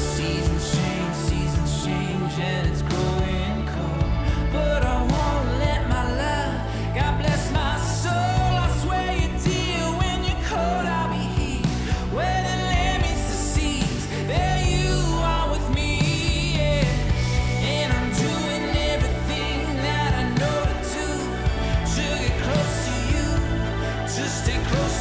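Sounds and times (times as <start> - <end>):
song with sung vocal: 0.0 - 25.0.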